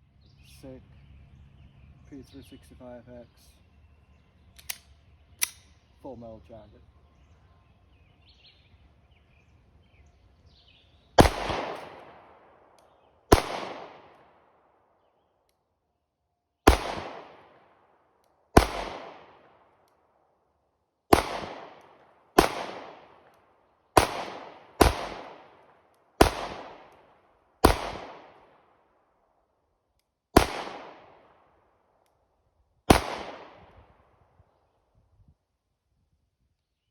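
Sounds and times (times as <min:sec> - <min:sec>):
pistol shots echoing: 0:11.2 - 0:14.6, 0:16.6 - 0:19.9, 0:21.1 - 0:28.8, 0:30.3 - 0:31.6, 0:32.9 - 0:34.0.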